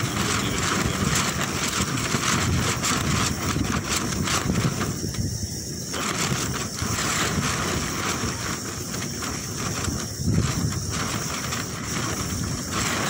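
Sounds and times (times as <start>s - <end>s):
strong wind gusting over microphone: 0.0s - 13.0s.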